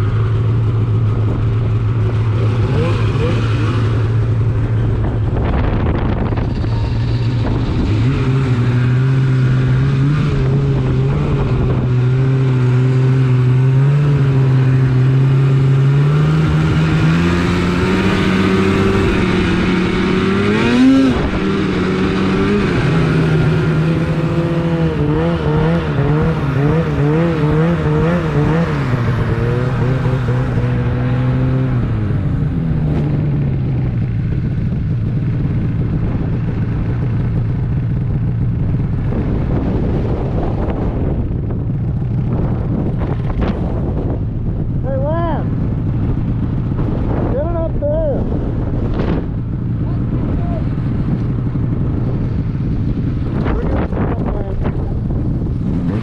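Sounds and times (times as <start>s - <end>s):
snowmobile engine running: 0.0s - 56.0s.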